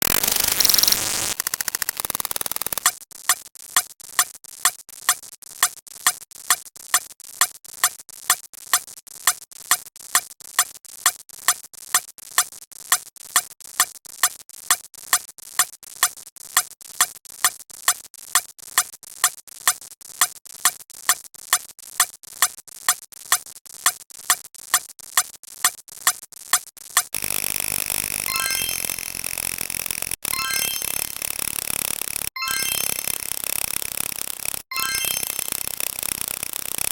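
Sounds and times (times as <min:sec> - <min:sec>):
short electronic blips: 0:28.2 - 0:31.4, 0:32.2 - 0:36.9.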